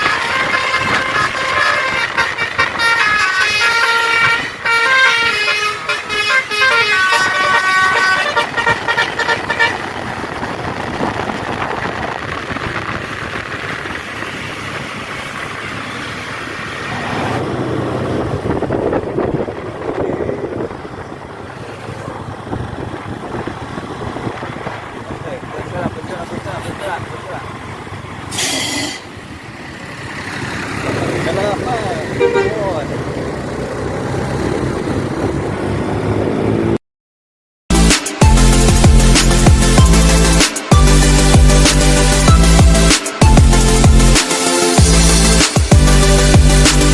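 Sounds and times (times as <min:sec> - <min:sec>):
musical air horn playing a tune: 0:00.0 - 0:09.9, 0:28.3 - 0:29.1, 0:32.2 - 0:32.7
bus engine: 0:00.0 - 0:36.8, 0:37.7 - 0:46.9
passing vehicle rumble: 0:00.0 - 0:36.8
road noise: 0:00.0 - 0:36.8, 0:37.7 - 0:46.9.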